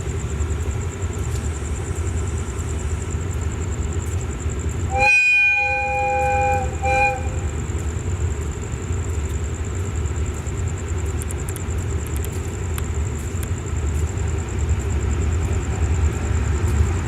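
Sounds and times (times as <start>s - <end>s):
train rumbling: 0.0s - 17.0s
train air horn: 4.9s - 7.6s.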